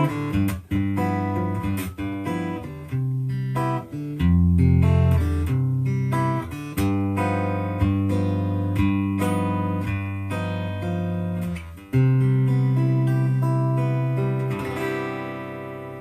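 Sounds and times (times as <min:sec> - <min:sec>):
fingerstyle acoustic guitar: 0:00.0 - 0:16.0.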